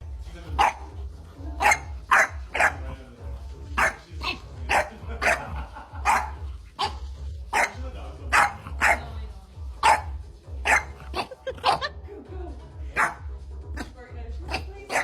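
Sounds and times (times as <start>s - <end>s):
dog barking: 0.6s - 1.0s, 1.6s - 2.9s, 3.8s - 9.2s, 9.8s - 11.9s, 13.0s - 15.0s.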